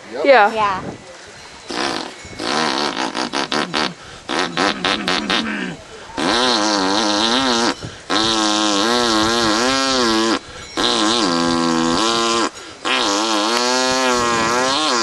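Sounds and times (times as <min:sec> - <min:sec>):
man imitating a motor: 0:01.7 - 0:15.0.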